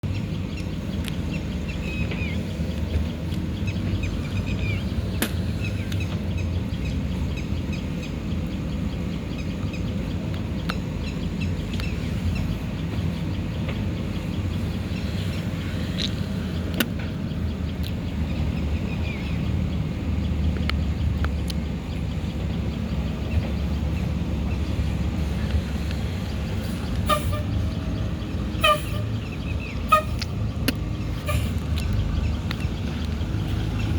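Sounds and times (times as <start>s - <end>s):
diesel engine running: 0.0s - 33.9s
short high squeaks: 31.2s - 31.6s.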